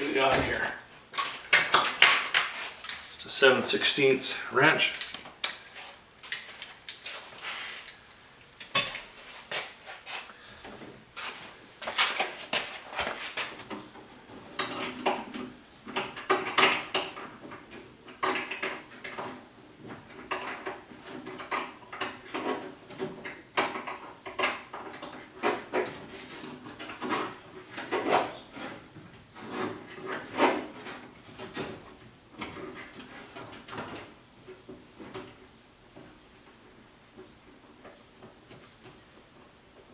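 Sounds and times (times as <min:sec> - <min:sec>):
wrench clicking and scraping metal: 0:04.8 - 0:07.2.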